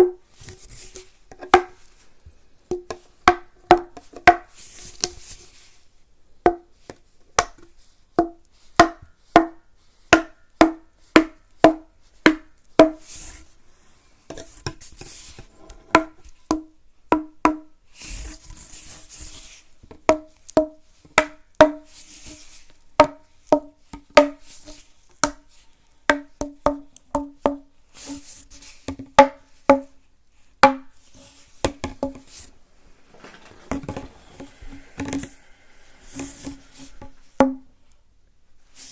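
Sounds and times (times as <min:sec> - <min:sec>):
tapping on hollow object: 0:00.0 - 0:02.0, 0:02.7 - 0:05.2, 0:30.6 - 0:37.6
soft brushing sounds: 0:30.4 - 0:38.0, 0:38.6 - 0:38.9.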